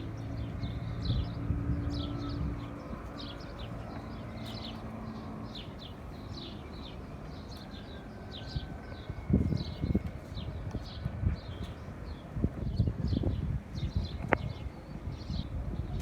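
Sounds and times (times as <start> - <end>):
small birds chirping: 0.0 - 8.7.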